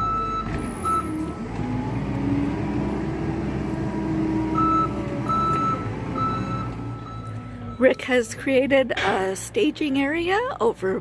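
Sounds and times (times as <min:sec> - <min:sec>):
backup alarm beeps: 0:00.0 - 0:01.3, 0:04.6 - 0:08.4
skid steer engine running: 0:00.0 - 0:07.8.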